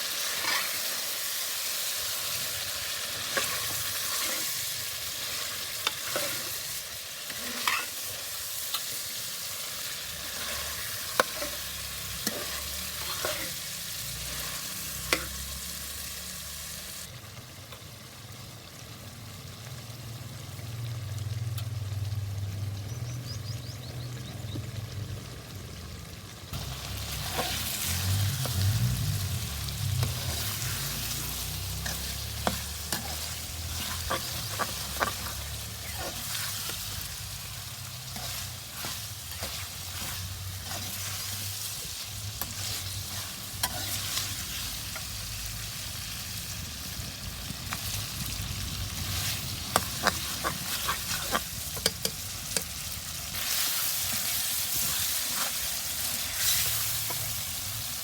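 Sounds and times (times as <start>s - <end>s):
curry sizzling in oil: 0.0s - 58.0s
spoon scraping a pan: 0.2s - 1.1s, 3.1s - 9.3s, 10.1s - 15.7s, 26.6s - 28.6s, 30.0s - 45.1s, 49.0s - 57.6s.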